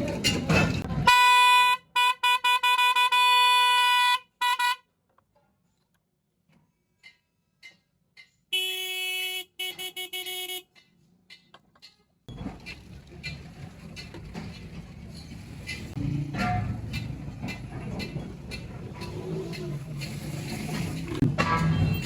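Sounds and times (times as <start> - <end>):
high-pitched electric car horn: 1.1 - 4.8, 8.6 - 10.7
lower-pitched car horn toots: 1.1 - 4.8, 8.6 - 10.6.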